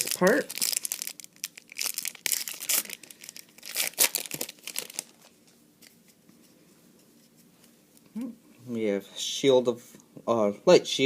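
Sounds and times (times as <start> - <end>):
wrapper tearing and crinkling: 0.0 - 5.3.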